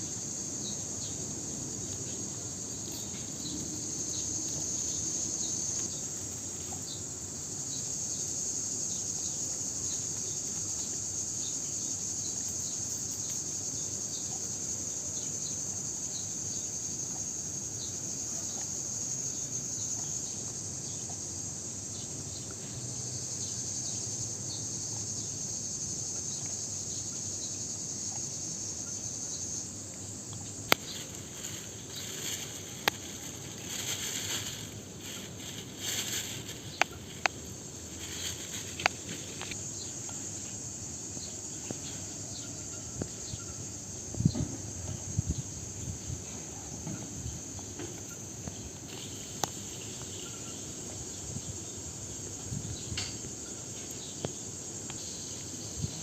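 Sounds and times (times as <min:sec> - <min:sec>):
high-pitched insect chorus: 0:00.0 - 0:56.0.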